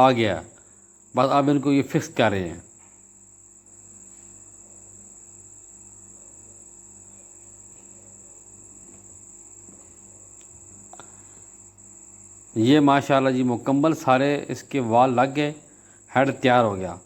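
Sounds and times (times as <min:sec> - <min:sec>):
faint background hum: 0:00.0 - 0:17.0.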